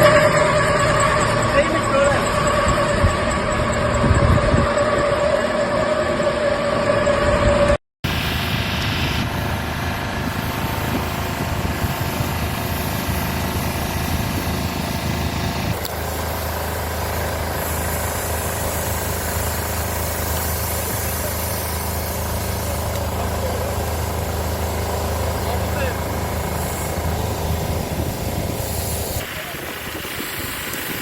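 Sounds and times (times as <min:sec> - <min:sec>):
vehicle engine idling: 0:08.1 - 0:31.0.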